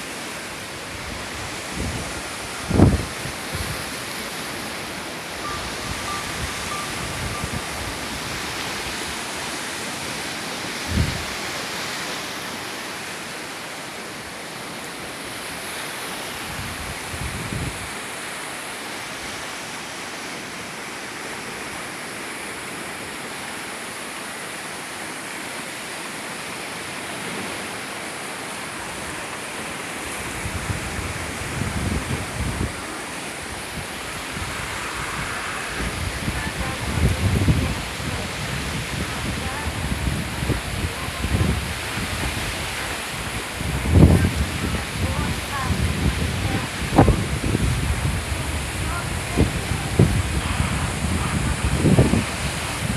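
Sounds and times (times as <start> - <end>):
waves washing on shore: 0.0 - 52.9
wind buffeting microphone: 0.8 - 10.0, 10.7 - 11.7, 16.4 - 17.9, 30.1 - 52.9.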